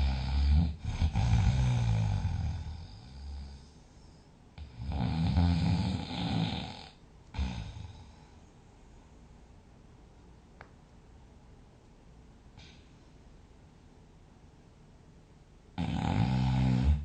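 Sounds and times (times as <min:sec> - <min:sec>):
person snoring: 0:00.0 - 0:03.8, 0:04.6 - 0:08.3, 0:15.8 - 0:17.0
quiet breathing: 0:00.0 - 0:09.7.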